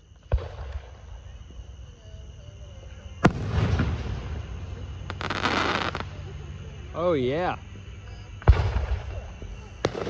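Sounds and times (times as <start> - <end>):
fireworks exploding: 3.2 - 6.3, 8.4 - 10.0
fireworks crackling: 3.2 - 6.4, 8.4 - 10.0.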